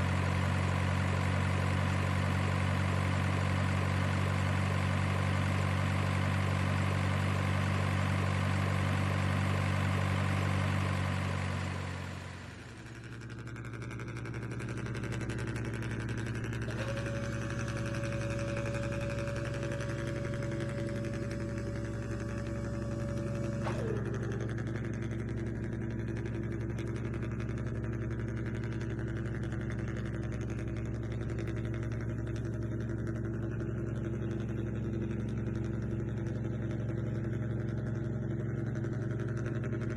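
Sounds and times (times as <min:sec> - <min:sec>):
engine-like drone: 0:00.0 - 0:39.9
high steady tone: 0:16.7 - 0:24.6
lower steady drone: 0:16.7 - 0:24.8.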